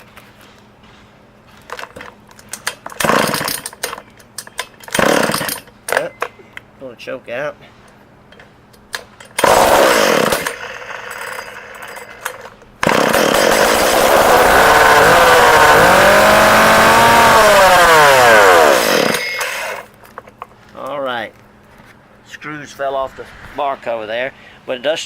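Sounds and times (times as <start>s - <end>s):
chainsaw engine revving: 3.0s - 3.6s, 5.0s - 5.6s, 9.4s - 11.2s, 12.8s - 19.9s.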